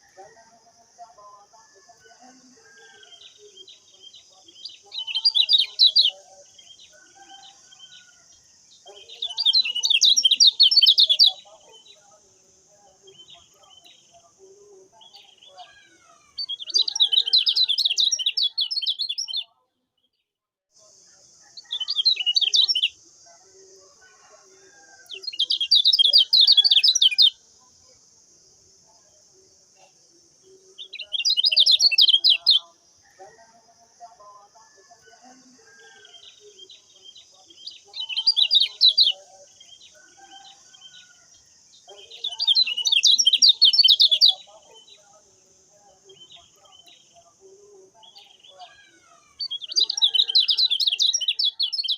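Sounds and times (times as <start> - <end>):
bird chattering song: 2.3 - 19.6, 21.6 - 23.0, 24.8 - 27.4, 29.8 - 33.3, 35.0 - 45.2, 45.8 - 51.9.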